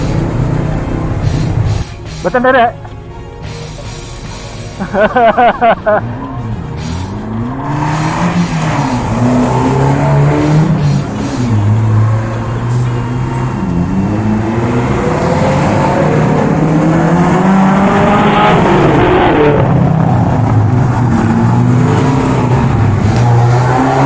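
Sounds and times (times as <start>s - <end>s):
engine revving: 0.0s - 2.8s, 3.4s - 24.0s
engines humming: 0.0s - 24.0s.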